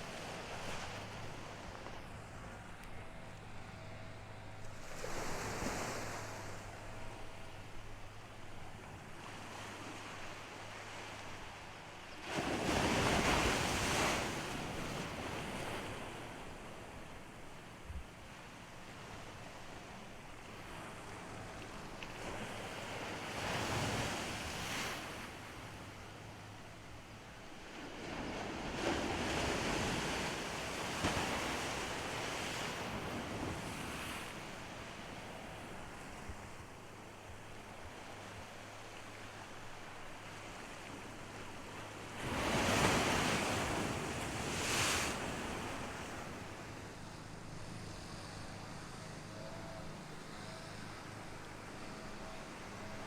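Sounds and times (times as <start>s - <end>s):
ocean surf breaking: 4.7s - 7.8s, 39.8s - 46.8s.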